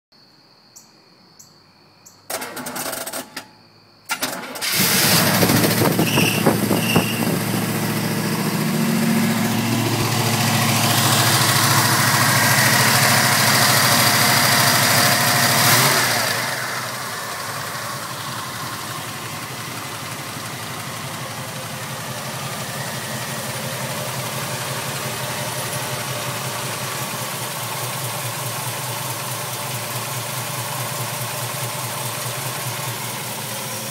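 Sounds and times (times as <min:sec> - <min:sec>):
engine starter cranking: 0:02.3 - 0:03.5, 0:04.1 - 0:08.2
car engine idling: 0:04.6 - 0:33.9.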